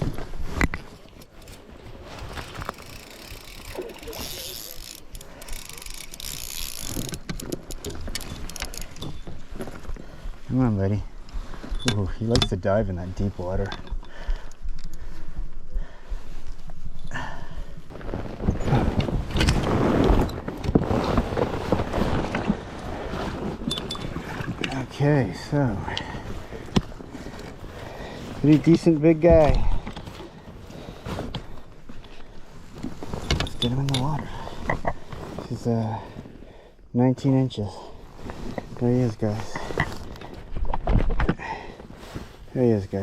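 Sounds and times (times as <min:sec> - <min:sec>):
fishing reel drag ratcheting: 0:02.3 - 0:09.1
knocks and rustling of handling: 0:17.9 - 0:25.0, 0:26.0 - 0:36.3, 0:38.1 - 0:42.4.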